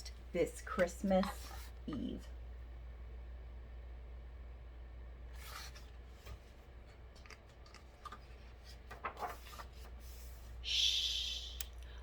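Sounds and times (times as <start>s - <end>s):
low steady hum: 0.0s - 12.0s
book pages rustling: 5.3s - 10.5s.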